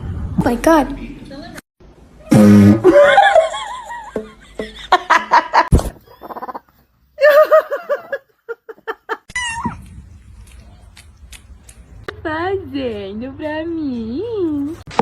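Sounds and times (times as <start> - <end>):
person laughing: 2.8 - 9.7.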